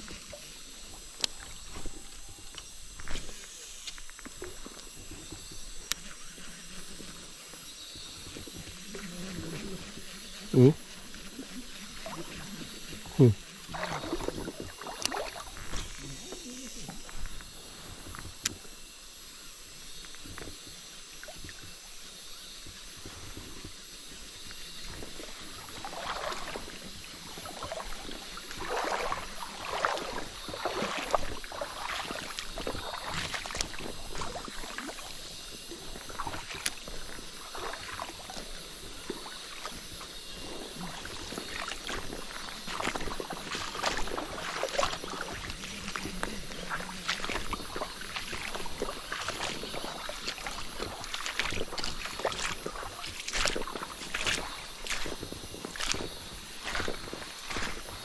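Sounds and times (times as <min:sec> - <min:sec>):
river water sloshing and splashing: 0:00.0 - 0:18.8, 0:20.1 - 0:58.0.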